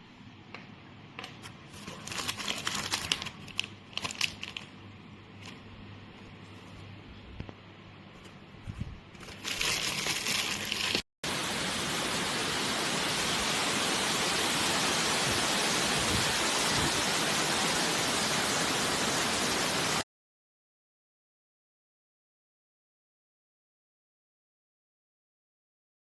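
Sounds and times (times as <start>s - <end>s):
steady hiss: 10.6s - 20.0s.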